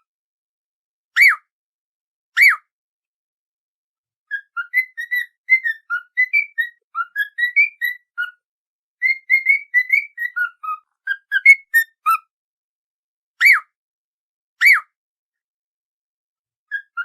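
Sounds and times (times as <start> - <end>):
whistled tune: 1.2 - 1.5, 2.4 - 2.7, 4.3 - 8.4, 9.0 - 12.2, 13.4 - 13.8, 14.6 - 15.0.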